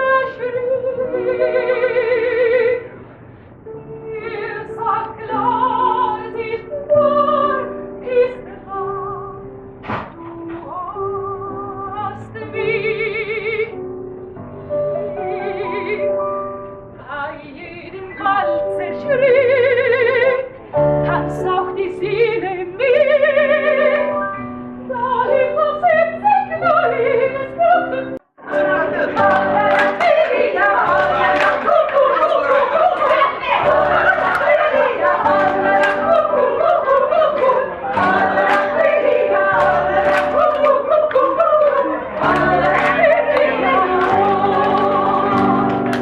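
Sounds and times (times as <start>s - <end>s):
operatic singing high voice: 28.4s - 45.8s
instrumental accompaniment: 28.4s - 46.0s.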